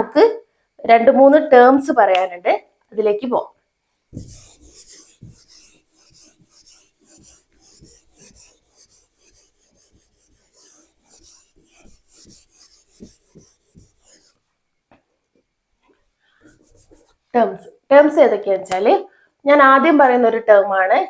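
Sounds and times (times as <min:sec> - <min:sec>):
soft knock: 0:04.2 - 0:04.6
handwriting scratching strokes: 0:04.2 - 0:14.5, 0:16.4 - 0:17.2.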